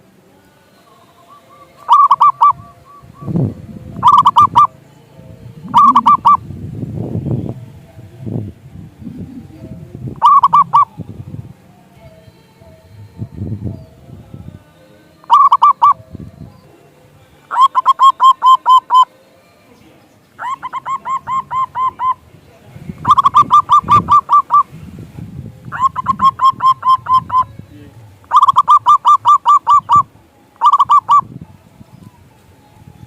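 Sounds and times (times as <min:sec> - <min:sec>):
dove cooing: 0:01.0 - 0:06.5, 0:07.5 - 0:11.0, 0:15.2 - 0:16.9, 0:17.5 - 0:19.2, 0:20.4 - 0:22.3, 0:23.0 - 0:24.7, 0:25.6 - 0:31.4.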